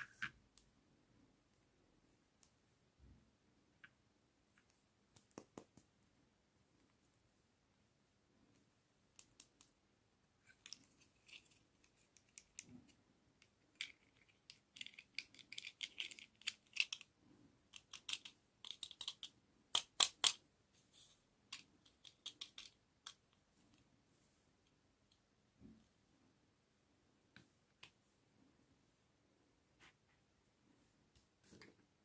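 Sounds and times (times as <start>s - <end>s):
plastic toys clicking and tapping: 13.4s - 17.1s, 17.7s - 20.4s, 21.5s - 23.4s.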